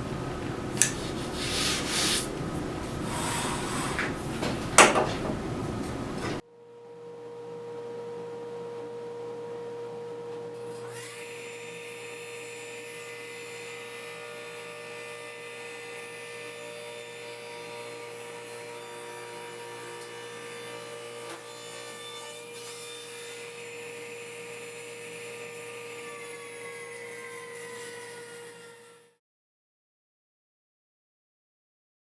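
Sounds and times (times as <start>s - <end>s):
rubbing and light knocks: 0.0s - 6.4s
steady humming drone: 0.0s - 6.4s
sharp click: 0.8s - 1.0s.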